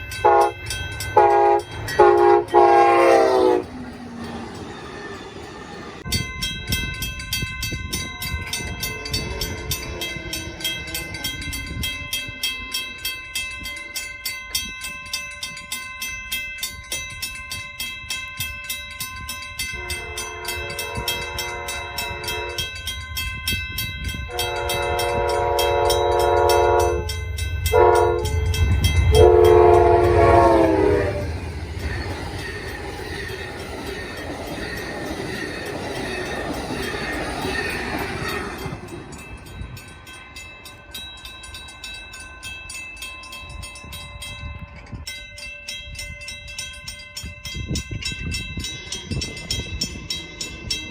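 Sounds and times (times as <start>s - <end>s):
crossing bell ringing: 0.0s - 50.9s
train rumble: 0.0s - 50.9s
locomotive air horn blasts: 0.2s - 3.7s, 19.8s - 22.7s, 24.3s - 28.5s, 29.1s - 31.4s.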